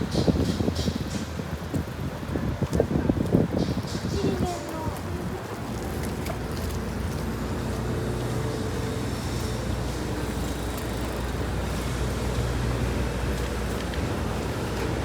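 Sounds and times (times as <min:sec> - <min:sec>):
road noise: 0:00.0 - 0:15.0
vehicle engines humming: 0:05.1 - 0:15.0.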